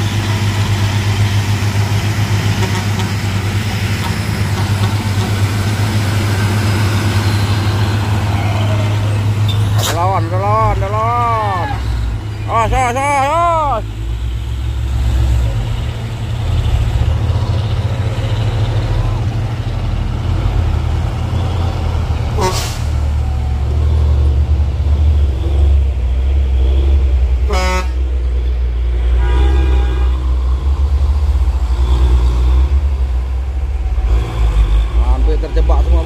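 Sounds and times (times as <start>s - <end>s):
truck engine rumble: 0.0s - 36.0s
truck horn toots: 2.5s - 3.3s, 22.3s - 23.0s, 27.4s - 28.1s, 29.0s - 30.4s.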